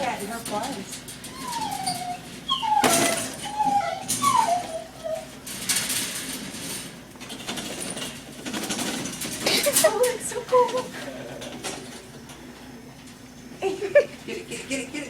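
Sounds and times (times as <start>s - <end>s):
wire cage rattling: 0.0s - 10.8s.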